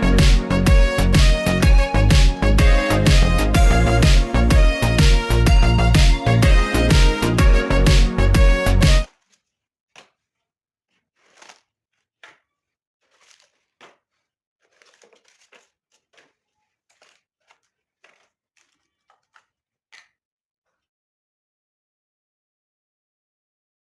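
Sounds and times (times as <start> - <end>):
paper crinkling and rustling: 9.1 - 20.1.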